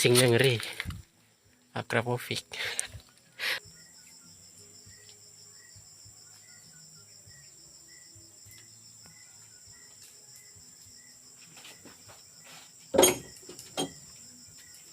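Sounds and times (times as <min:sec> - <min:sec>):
high-pitched insect trilling: 0:02.6 - 0:14.9.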